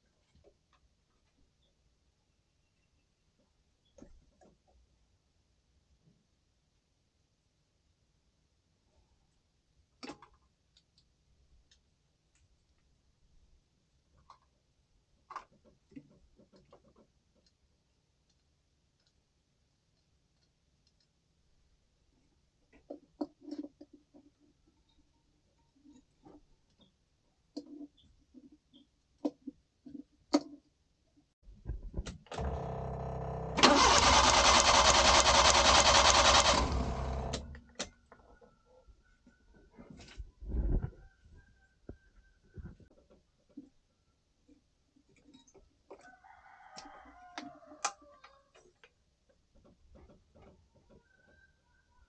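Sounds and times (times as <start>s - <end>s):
faint clicks and knocks: 14.1s - 21.4s
car engine cranking without starting: 32.3s - 37.7s.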